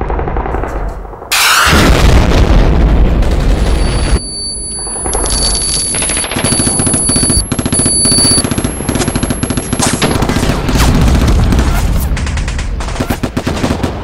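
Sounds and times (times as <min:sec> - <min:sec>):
automatic gunfire: 0:05.9 - 0:14.0.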